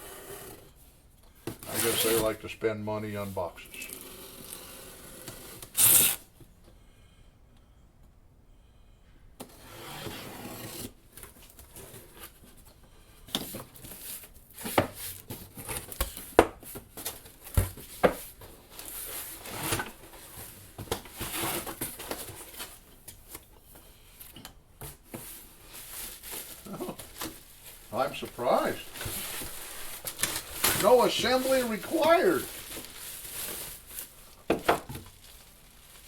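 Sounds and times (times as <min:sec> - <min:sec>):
packing material rustling: 0:25.3 - 0:36.0.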